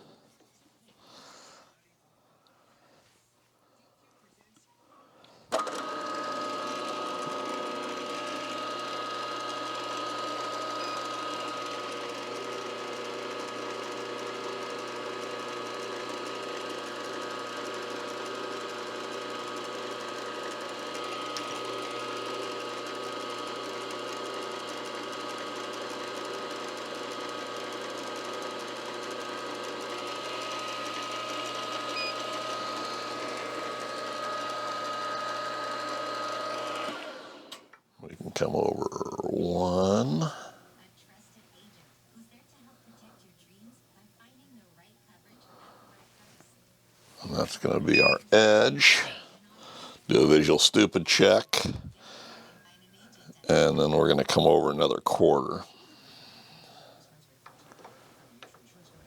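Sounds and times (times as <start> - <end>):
milling machine whine: 5.6 - 37.6, 47.2 - 52.5.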